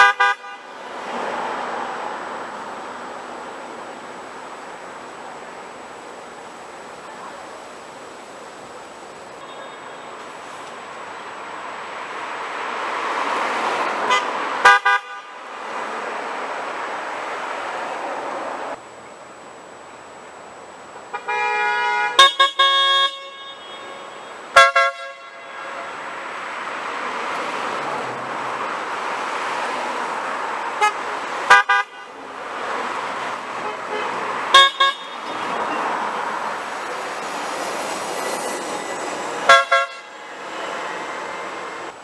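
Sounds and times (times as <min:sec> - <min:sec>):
car horns honking: 0:00.0 - 0:01.1, 0:09.4 - 0:10.7, 0:13.9 - 0:15.6, 0:21.1 - 0:26.3, 0:30.7 - 0:32.3, 0:33.4 - 0:37.4, 0:38.3 - 0:41.8
cars driving past: 0:00.0 - 0:18.9, 0:23.2 - 0:42.0.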